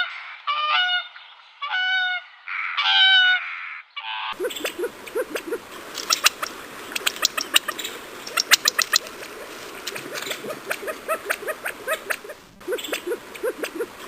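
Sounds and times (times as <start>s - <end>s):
animal high chirps and clicks: 4.4s - 14.0s
low animal squeaks: 4.4s - 14.0s.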